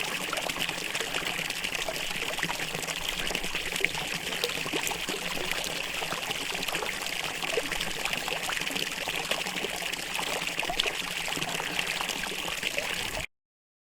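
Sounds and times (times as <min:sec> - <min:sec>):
fountain water trickling: 0:00.0 - 0:13.3.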